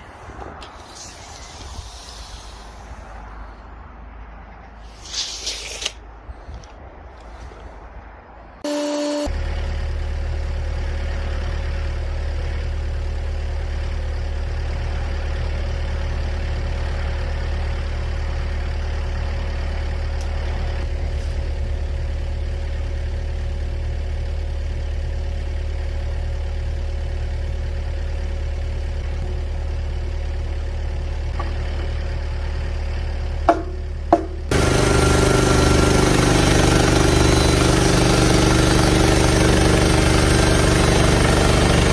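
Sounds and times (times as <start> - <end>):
sawmill engine running: 8.6 - 41.9
sharp knocks: 33.5 - 34.6.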